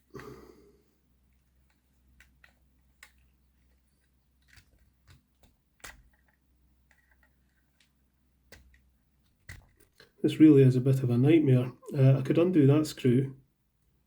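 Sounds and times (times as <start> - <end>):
small model parts clicking: 1.6 - 10.2.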